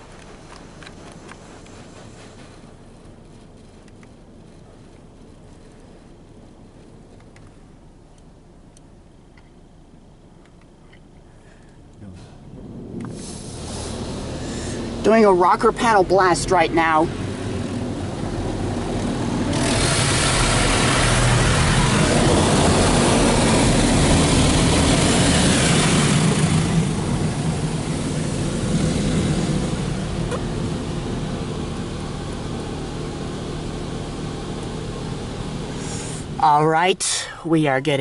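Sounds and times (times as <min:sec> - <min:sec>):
low rumble of machinery: 0:00.0 - 0:38.0
high-pressure water spray hissing: 0:13.1 - 0:33.4, 0:35.1 - 0:36.3.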